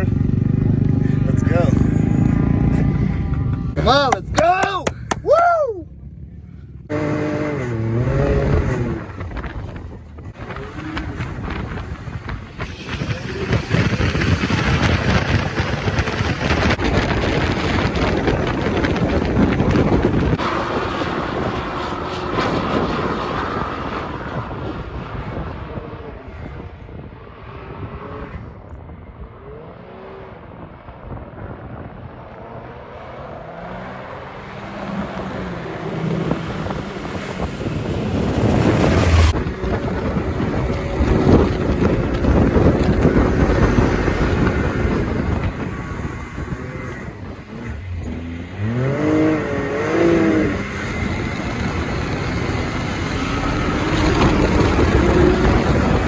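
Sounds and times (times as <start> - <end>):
engine running under load: 5.9 - 22.1, 34.6 - 56.0
wind noise: 6.9 - 33.2, 34.0 - 56.0.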